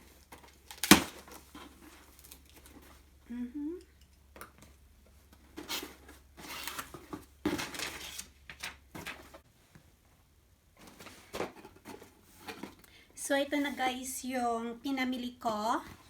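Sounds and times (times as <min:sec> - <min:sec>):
boxes scraping and knocking: 0:05.4 - 0:08.3, 0:10.8 - 0:12.8
packaging rustling: 0:05.6 - 0:09.4.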